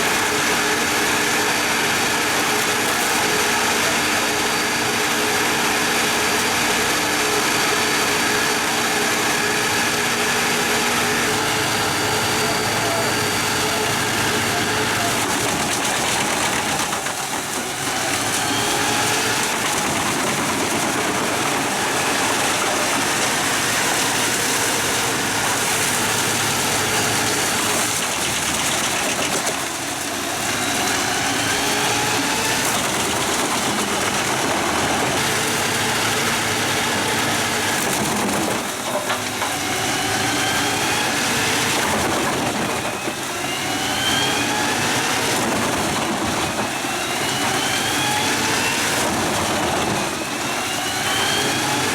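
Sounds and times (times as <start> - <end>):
truck engine revving: 0.0 - 38.6
wood chipper running: 0.0 - 51.9.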